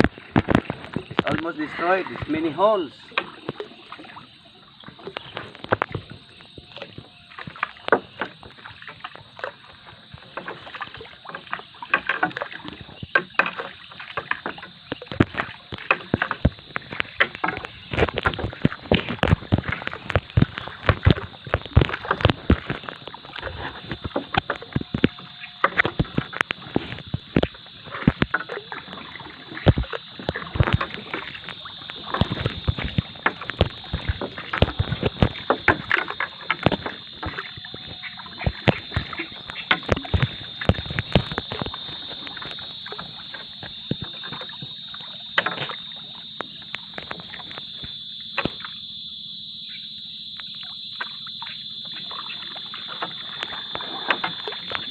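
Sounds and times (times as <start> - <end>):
knocks and clatter against hull: 0.0 - 48.8, 50.3 - 54.9
steady high-pitched buzz: 12.6 - 54.9.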